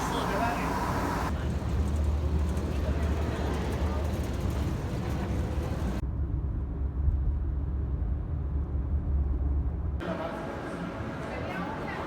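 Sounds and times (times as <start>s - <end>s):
road noise hiss: 0.0s - 1.5s
motor vehicle rumble: 0.0s - 6.5s.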